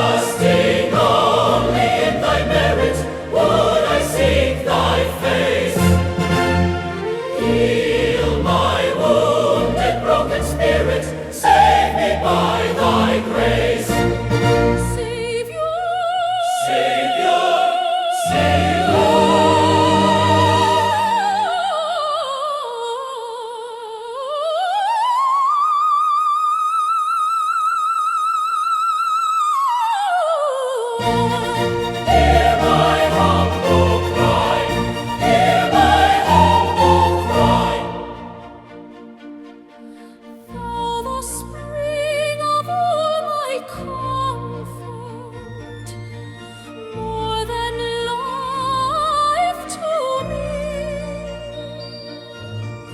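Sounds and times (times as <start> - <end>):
choir singing a hymn: 0.0 - 22.4, 31.0 - 39.0.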